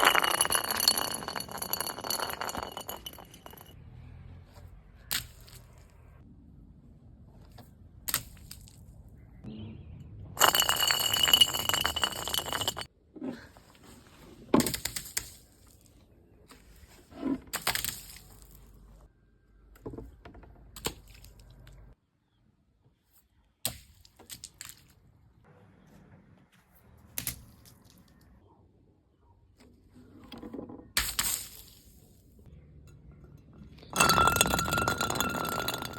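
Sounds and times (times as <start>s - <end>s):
glass bottles smashing: 0.0s - 3.7s, 10.4s - 12.9s, 33.9s - 35.9s.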